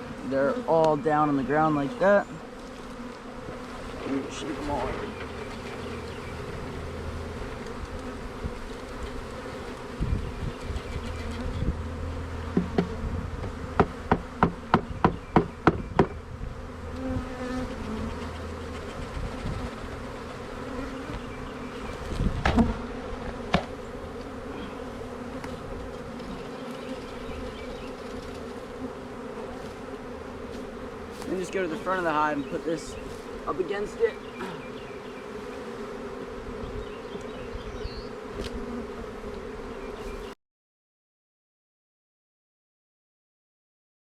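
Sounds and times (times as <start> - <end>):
bees buzzing: 0.0 - 40.4
heavy thump: 12.5 - 16.2.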